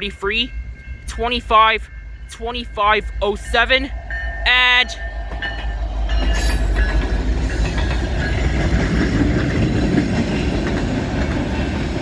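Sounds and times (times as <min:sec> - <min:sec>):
diesel locomotives running: 0:00.0 - 0:12.0
train wheels rolling on rails: 0:03.3 - 0:12.0.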